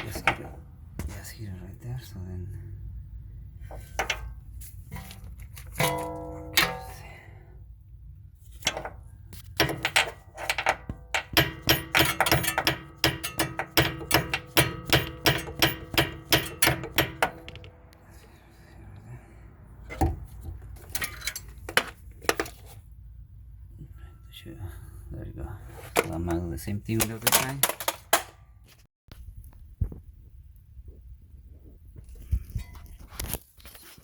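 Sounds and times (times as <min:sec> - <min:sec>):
small hammer tapping metal: 0:09.6 - 0:17.8.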